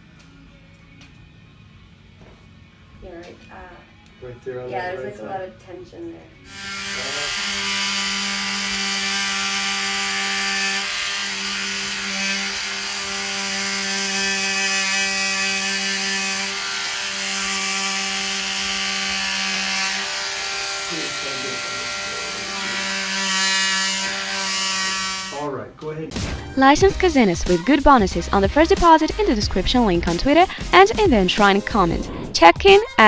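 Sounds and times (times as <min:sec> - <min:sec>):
electric massager buzzing: 0:06.4 - 0:25.5.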